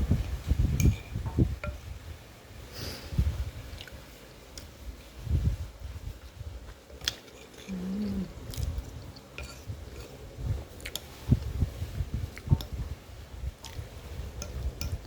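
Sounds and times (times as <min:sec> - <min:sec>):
chewing food: 0:06.7 - 0:11.5
closed-mouth hum: 0:07.6 - 0:10.7.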